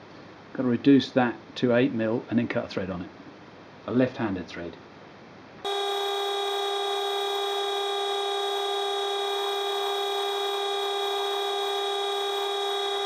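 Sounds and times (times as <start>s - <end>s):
lathe running whine: 5.7s - 13.0s.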